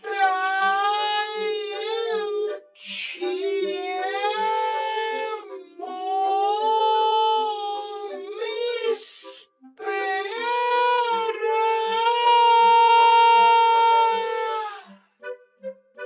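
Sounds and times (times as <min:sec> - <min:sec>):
faint music beat: 0:00.1 - 0:06.7.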